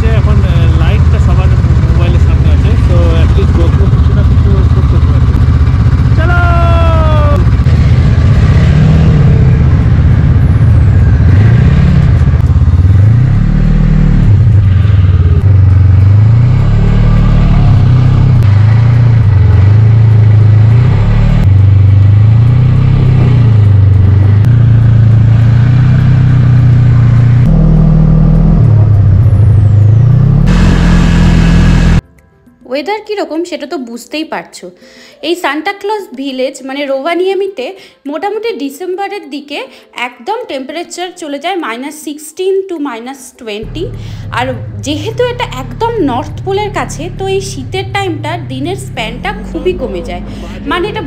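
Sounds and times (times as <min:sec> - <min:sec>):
snowmobile engine revving: 0:00.0 - 0:32.0, 0:43.6 - 0:51.0.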